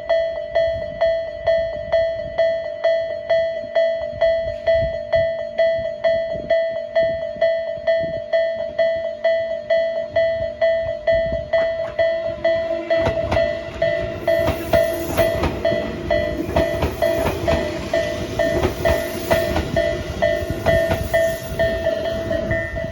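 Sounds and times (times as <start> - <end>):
level crossing bell ringing: 5.2 - 22.9
train wheels clacking over rail joints: 11.6 - 22.8.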